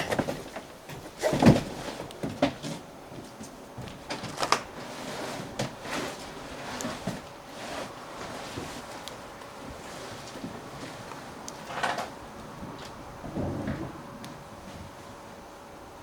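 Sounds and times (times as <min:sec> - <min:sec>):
knocks and bumps: 0:00.0 - 0:04.4, 0:11.6 - 0:15.2
low background noise: 0:00.0 - 0:16.0.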